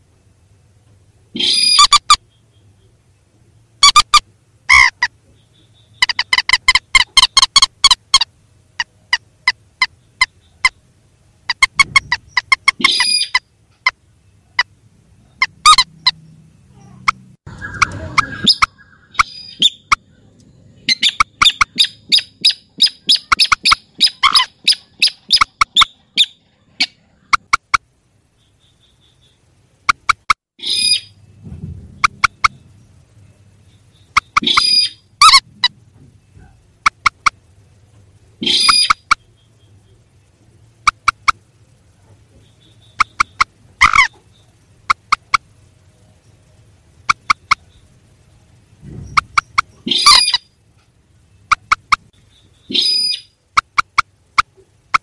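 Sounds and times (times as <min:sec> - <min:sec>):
rails calling sharp repeated notes: 0:20.8 - 0:27.9, 0:28.7 - 0:37.5, 0:38.4 - 0:45.8.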